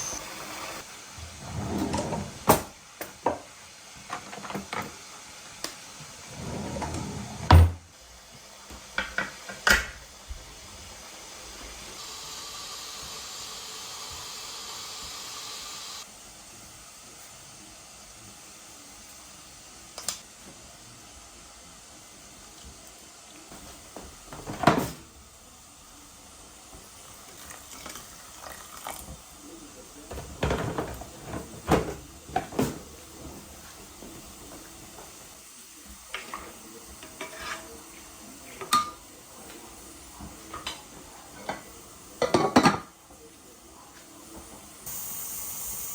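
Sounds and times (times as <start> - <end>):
steady hiss: 0.0 - 4.0, 8.0 - 45.9
pots and dishes clattering: 1.5 - 5.0, 8.9 - 10.0, 23.6 - 25.1, 30.1 - 34.2, 36.1 - 37.9, 38.6 - 39.1, 40.2 - 43.0.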